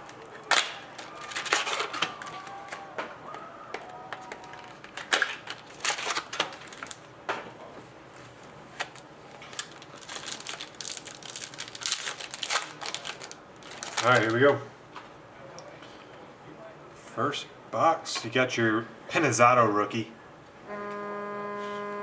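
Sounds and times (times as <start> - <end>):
card pack wrappers ripping: 0.0 - 2.9, 4.2 - 7.1, 8.7 - 14.4.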